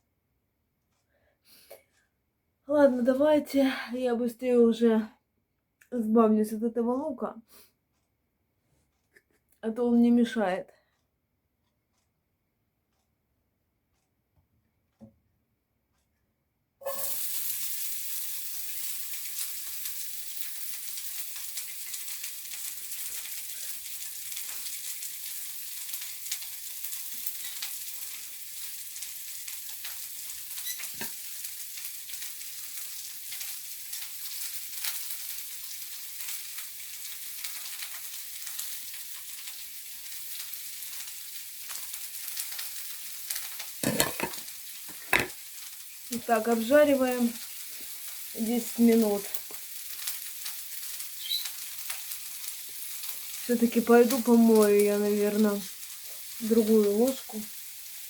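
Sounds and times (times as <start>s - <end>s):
onion frying in oil: 16.8s - 58.0s.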